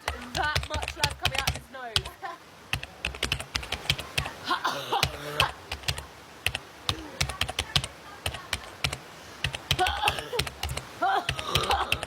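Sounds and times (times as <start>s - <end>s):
quick irregular clicks and taps: 0.0s - 4.4s, 5.0s - 12.0s
breathy vocal sound: 11.2s - 12.0s.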